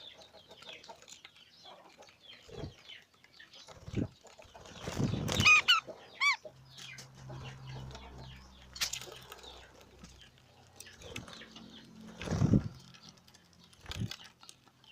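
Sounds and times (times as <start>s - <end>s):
budgies chirping: 0.0s - 12.7s
budgie sharp arched calls: 5.3s - 6.5s.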